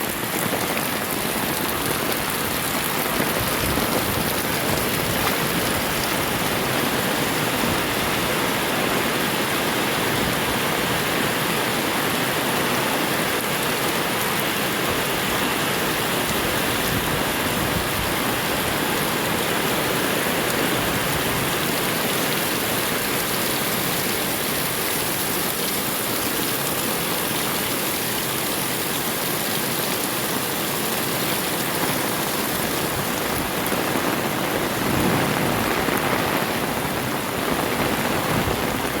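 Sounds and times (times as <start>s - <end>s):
heavy rain: 0.0s - 39.0s.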